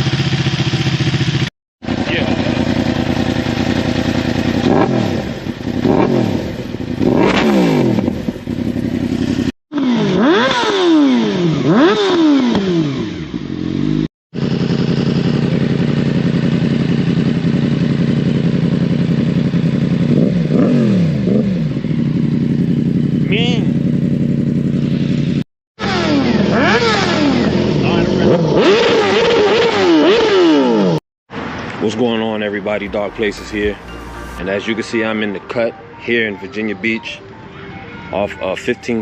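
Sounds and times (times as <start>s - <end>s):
motorcycle engine idling: 0.0s - 7.0s, 8.0s - 9.5s, 14.4s - 25.4s
motorcycle engines revving: 0.0s - 35.7s.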